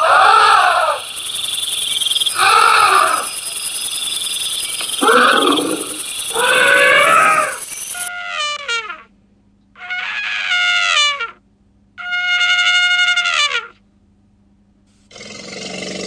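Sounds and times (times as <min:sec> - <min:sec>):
animal calling loudly: 0:00.0 - 0:08.1
insects chirring: 0:00.0 - 0:08.1.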